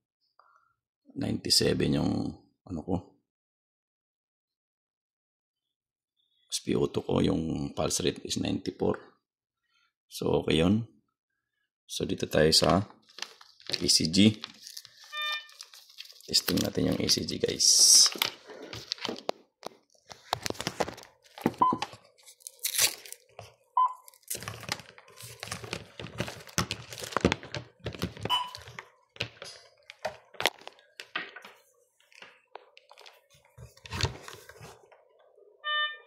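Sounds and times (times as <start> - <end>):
cables and plastic crinkling: 12.6 - 35.2
short monitor beeps: 15.1 - 15.6, 35.6 - 36.0.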